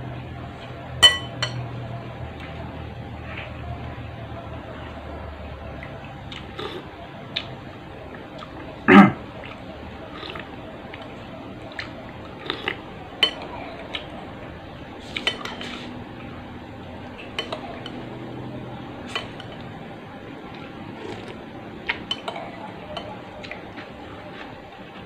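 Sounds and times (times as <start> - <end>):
spoon clinking against bowl: 1.0 - 1.6, 13.2 - 13.6, 17.3 - 18.1, 19.1 - 19.7, 22.0 - 23.3.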